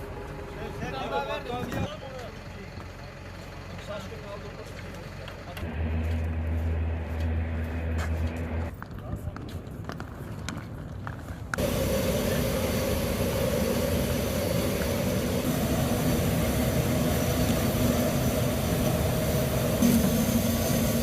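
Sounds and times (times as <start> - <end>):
aircraft engines droning: 5.1 - 8.7, 11.5 - 21.0.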